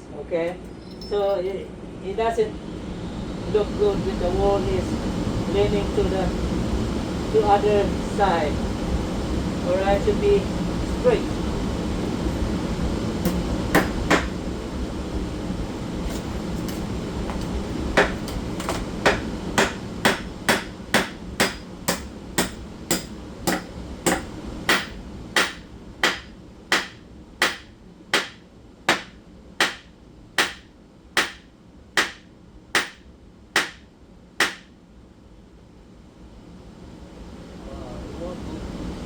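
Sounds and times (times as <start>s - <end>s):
hammer strikes: 13.2s - 14.4s, 16.1s - 33.0s, 33.6s - 34.7s.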